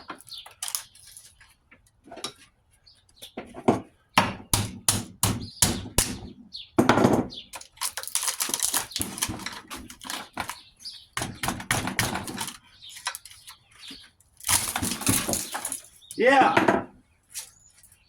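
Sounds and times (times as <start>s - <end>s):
sharp knocks: 3.7s - 7.3s
metal scraping and rattling: 11.8s - 13.6s.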